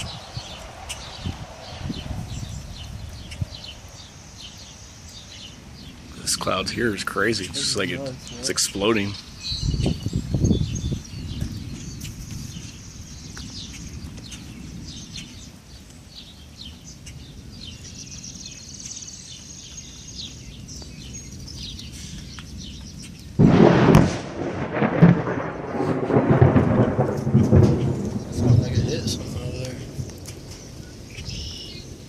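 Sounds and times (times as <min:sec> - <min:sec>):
loud thunderclap: 0:00.0 - 0:03.7, 0:23.4 - 0:32.0
birds chirping: 0:00.0 - 0:32.0.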